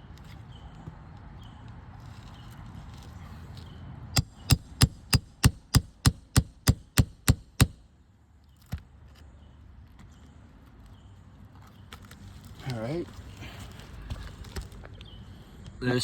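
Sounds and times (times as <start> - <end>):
hammer tapping asphalt shingle: 4.2 - 7.8.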